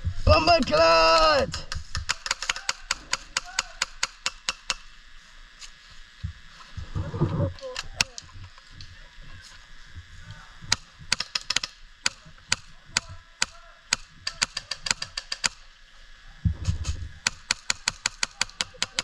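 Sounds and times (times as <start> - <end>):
airsoft guns firing: 0.7 - 4.9, 10.7 - 15.6, 17.2 - 19.0
low thump and rumble: 16.4 - 17.2.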